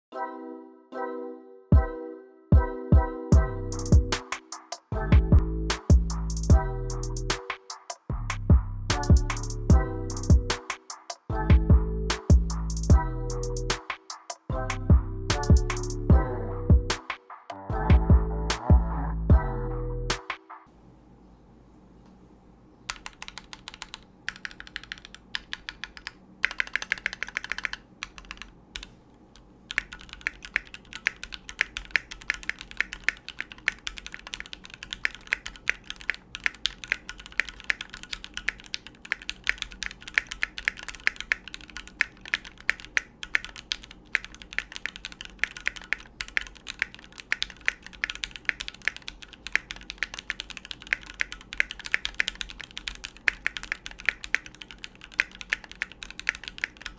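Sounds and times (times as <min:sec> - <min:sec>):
mechanical keyboard typing: 0:22.9 - 0:28.9, 0:29.7 - 0:56.9.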